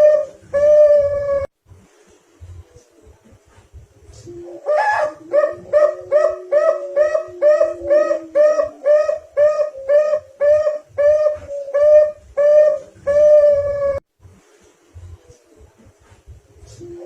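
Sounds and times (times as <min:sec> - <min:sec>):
dove cooing: 0:00.0 - 0:01.5, 0:04.1 - 0:14.0, 0:16.6 - 0:17.0.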